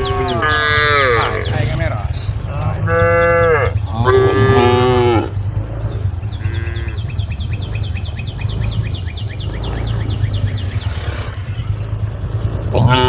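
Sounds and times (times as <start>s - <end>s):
cows mooing: 0.0s - 13.0s
rapid high falling chirps: 5.4s - 12.6s.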